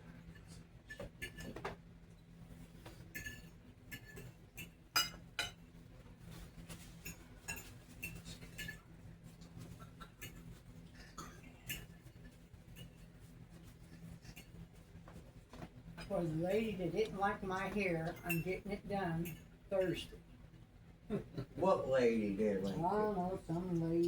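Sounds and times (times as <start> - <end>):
cutlery clinking on plates: 0.3 - 1.8, 2.9 - 5.7, 6.7 - 8.9, 9.7 - 13.1, 14.2 - 14.6.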